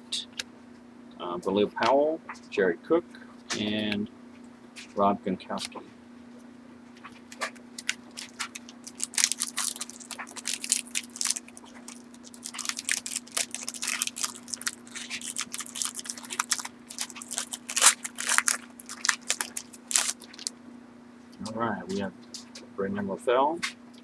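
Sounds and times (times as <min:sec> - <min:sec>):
faint low hum: 0:00.0 - 0:24.0
foil wrapper crinkling and tearing: 0:07.3 - 0:20.5.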